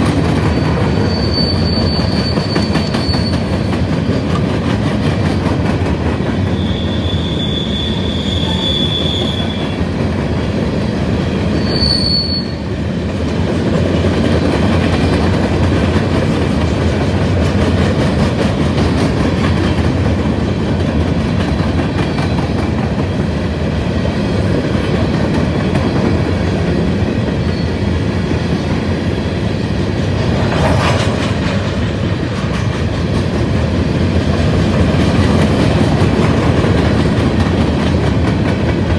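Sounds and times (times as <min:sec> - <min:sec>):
freight cars rumbling on rails: 0:00.0 - 0:38.9
thin wheel squeals: 0:00.5 - 0:03.7, 0:06.6 - 0:09.6, 0:11.6 - 0:12.6.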